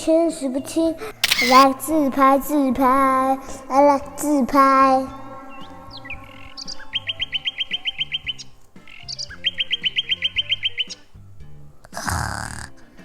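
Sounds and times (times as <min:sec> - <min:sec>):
background music: 0:00.0 - 0:13.0
rapid bird-like chirps: 0:01.2 - 0:01.7, 0:05.1 - 0:11.2.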